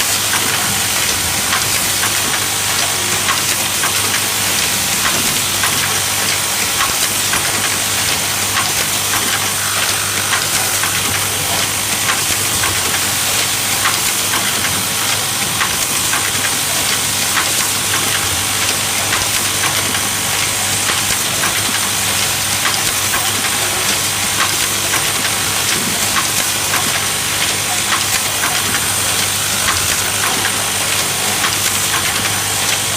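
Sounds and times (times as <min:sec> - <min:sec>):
machine hum: 0:07.6 - 0:13.4.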